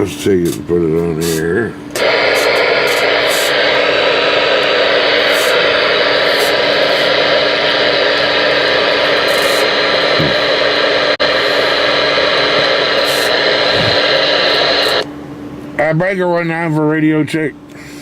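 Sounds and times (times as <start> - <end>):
radio static hiss: 1.2 - 15.0
low hum: 1.9 - 15.3.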